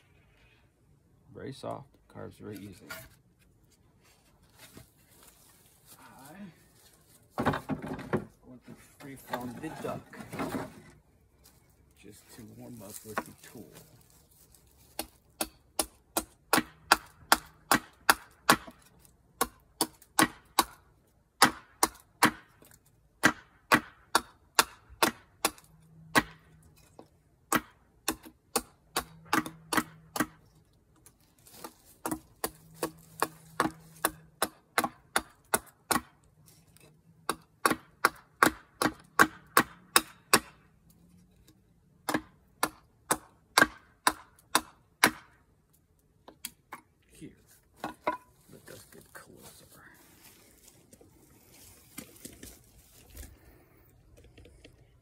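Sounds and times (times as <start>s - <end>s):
hatchet chopping wood: 14.9s - 30.5s, 31.5s - 40.7s, 42.0s - 45.4s, 47.8s - 48.3s.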